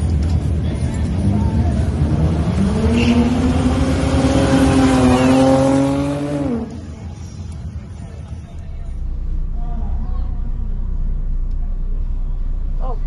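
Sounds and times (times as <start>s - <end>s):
car engine accelerating hard: 0.0s - 7.3s.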